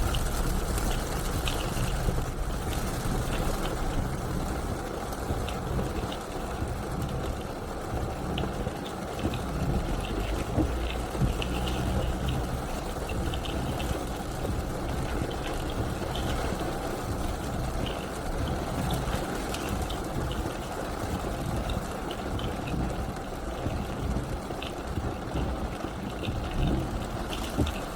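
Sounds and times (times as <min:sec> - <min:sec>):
rain ticking: 0:00.0 - 0:27.9
tyres rushing on wet road: 0:00.0 - 0:27.9
low rumble: 0:25.6 - 0:27.9.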